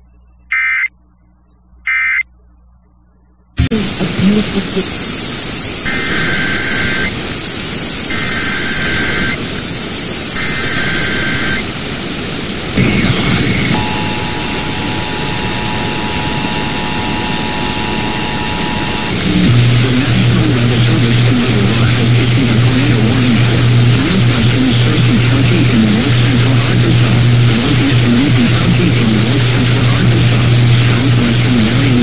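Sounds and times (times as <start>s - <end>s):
warbling data tone bursts: 0.0s - 3.6s, 4.2s - 7.2s, 7.9s - 9.5s, 10.2s - 11.7s, 12.8s - 32.0s
radio static hiss: 0.0s - 32.0s
two-tone attention signal: 13.7s - 19.2s.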